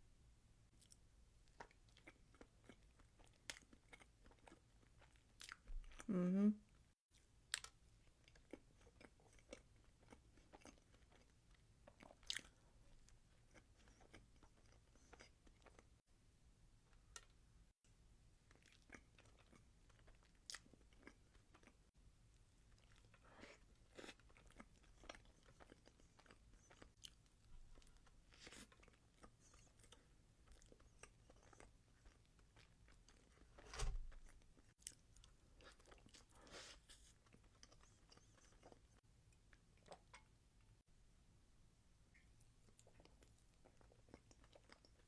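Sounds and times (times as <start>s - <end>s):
person chewing cake: 0.7s - 6.1s, 7.1s - 16.0s, 18.4s - 33.6s, 34.2s - 40.4s, 42.1s - 45.0s.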